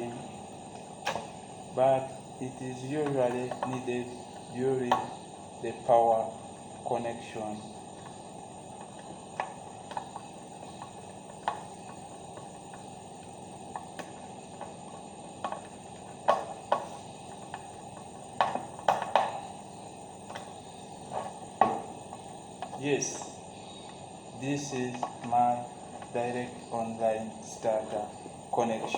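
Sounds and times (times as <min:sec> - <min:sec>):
steady hiss: 0:00.0 - 0:28.9
clicks of small electrical parts: 0:01.0 - 0:01.3.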